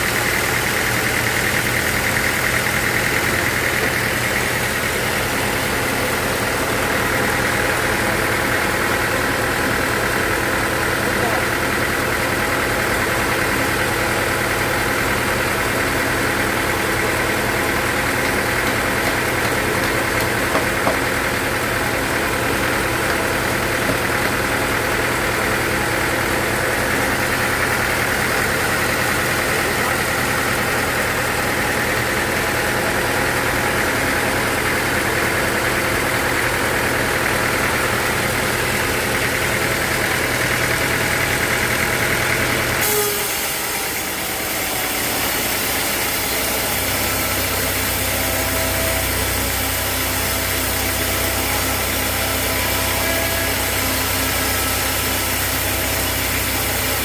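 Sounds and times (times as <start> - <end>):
sawmill machinery humming: 0.0 - 57.0.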